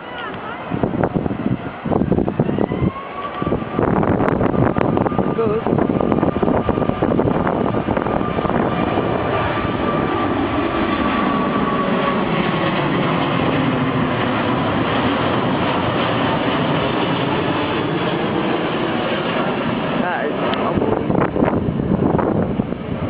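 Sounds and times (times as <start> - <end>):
jet engines roaring: 0.0 - 23.0.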